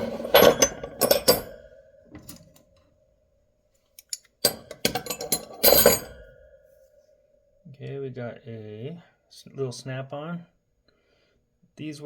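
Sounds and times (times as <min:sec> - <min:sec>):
metal wrenches clinking: 0:00.0 - 0:02.6, 0:04.0 - 0:06.3.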